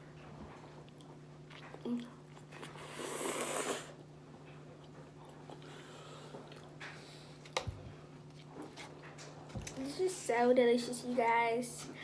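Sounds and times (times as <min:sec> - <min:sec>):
person eating spaghetti: 0:00.8 - 0:04.1, 0:04.7 - 0:07.6.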